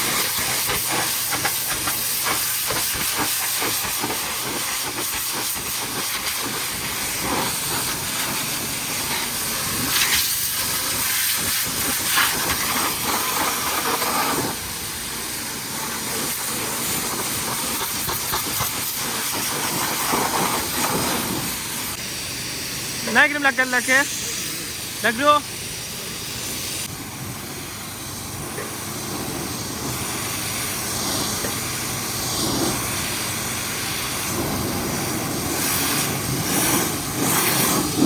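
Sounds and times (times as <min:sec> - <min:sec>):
pressure washer spraying water: 0:00.0 - 0:38.0.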